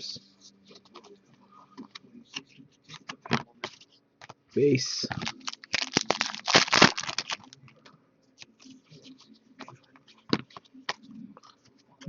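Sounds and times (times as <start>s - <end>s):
card pack wrapper crinkling: 5.0s - 7.6s.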